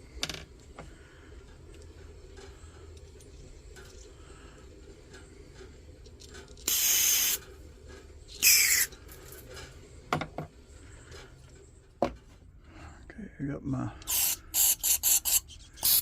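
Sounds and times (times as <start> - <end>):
air hissing through lantern part: 6.6 - 7.5, 8.3 - 9.0, 14.0 - 16.0.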